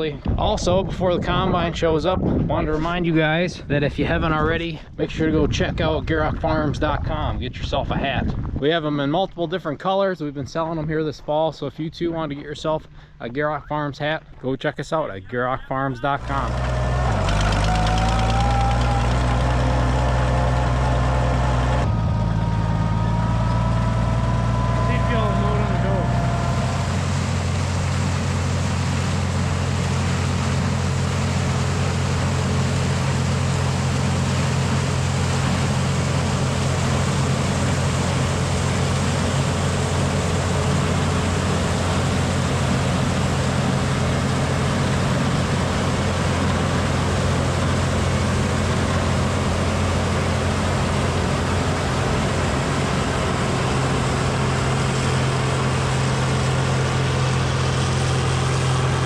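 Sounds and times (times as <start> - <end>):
tractor engine running: 16.0 - 59.0.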